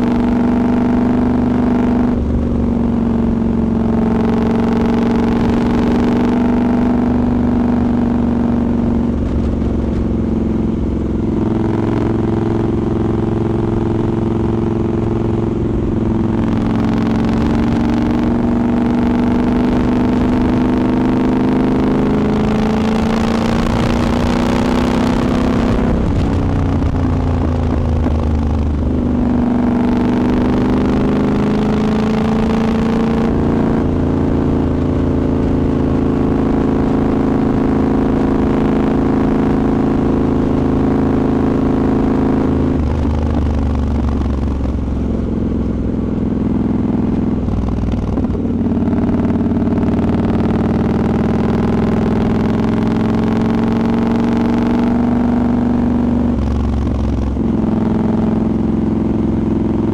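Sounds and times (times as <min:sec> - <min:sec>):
motorcycle engine running: 0:00.0 - 0:59.9
wind rush: 0:23.2 - 0:29.4.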